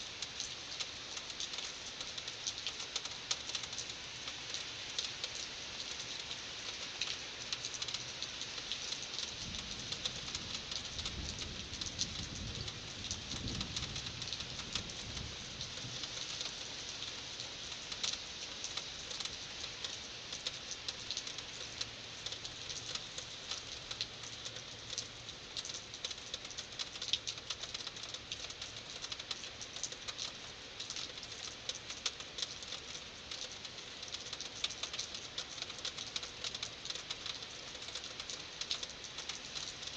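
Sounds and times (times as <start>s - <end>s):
heavy rain pattering: 0.0s - 39.9s
low rumble of thunder: 9.4s - 16.0s.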